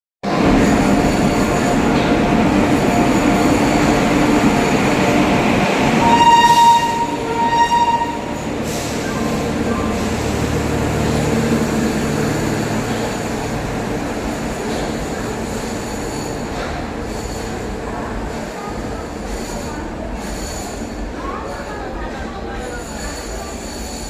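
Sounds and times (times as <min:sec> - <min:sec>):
train wheels rumbling: 0:00.2 - 0:24.0
locomotive horn blasts: 0:06.0 - 0:08.5.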